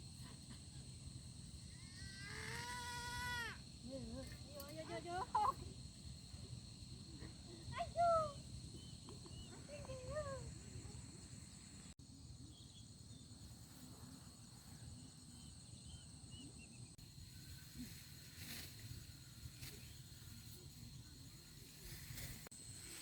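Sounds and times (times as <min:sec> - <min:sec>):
high-pitched insect drone: 0:01.5 - 0:03.8
soft rustles: 0:17.4 - 0:23.0.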